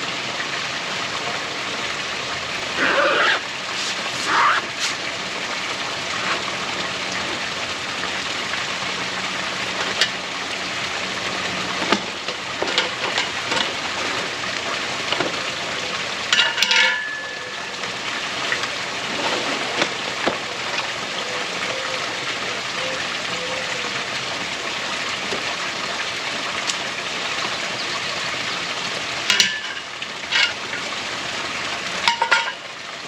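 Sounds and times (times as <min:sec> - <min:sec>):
steady hiss: 0:02.8 - 0:05.4.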